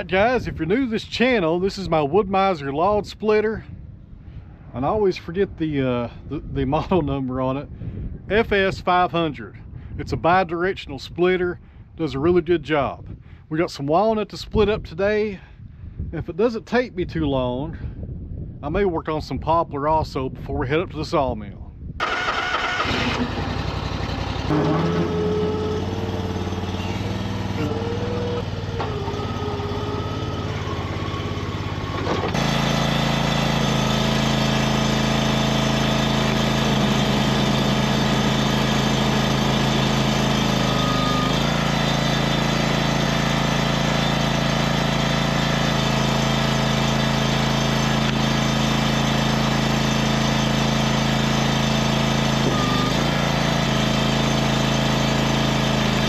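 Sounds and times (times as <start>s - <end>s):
small gas engine running: 22.0s - 56.0s.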